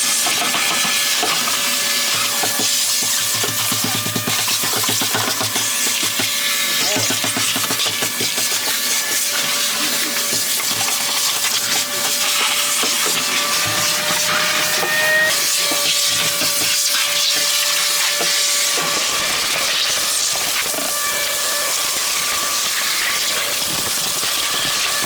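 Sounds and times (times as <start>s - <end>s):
cleaning machine motor whining: 8.8s - 16.3s.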